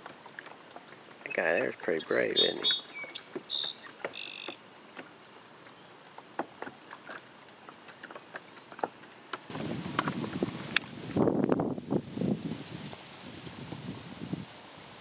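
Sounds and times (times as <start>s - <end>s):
birds chirping: 0.0s - 6.1s
wind on the microphone: 9.5s - 15.0s.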